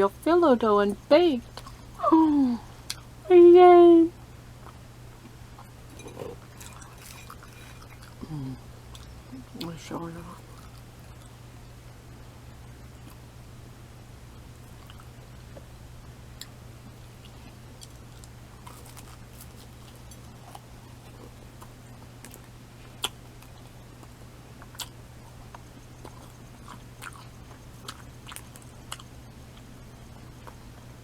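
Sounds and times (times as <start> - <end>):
person chewing: 5.6 - 9.2, 17.2 - 29.7.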